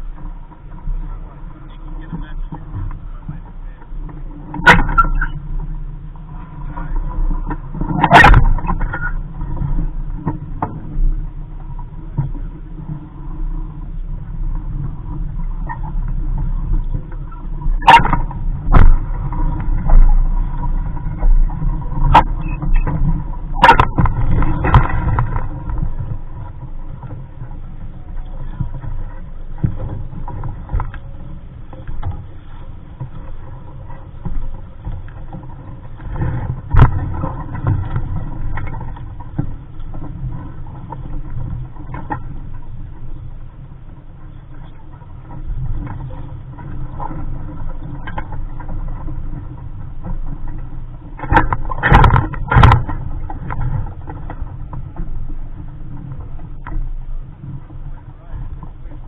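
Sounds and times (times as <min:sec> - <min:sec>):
wind rumbling on microphone: 0:00.0 - 0:59.0
sharp knocks and clatters: 0:22.0 - 0:25.9, 0:51.2 - 0:55.1.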